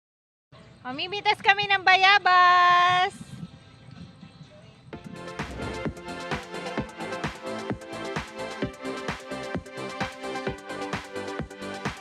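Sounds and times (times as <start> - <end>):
music with steady drum beat: 5.0 - 12.0.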